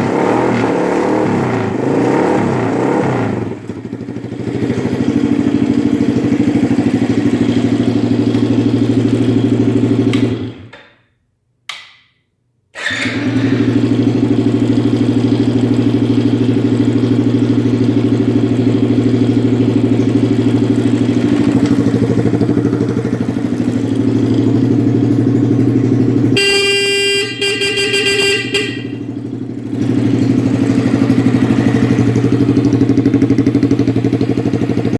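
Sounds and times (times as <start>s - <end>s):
small car engine running: 0.0s - 10.7s, 12.8s - 34.9s
car horn: 26.2s - 30.0s.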